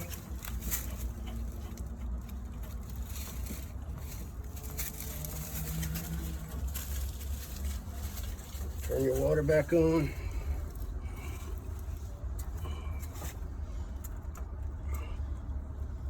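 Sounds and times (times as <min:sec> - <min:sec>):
faint clicks and scrapes: 0:00.0 - 0:09.2
steady low rumble: 0:00.0 - 0:16.0.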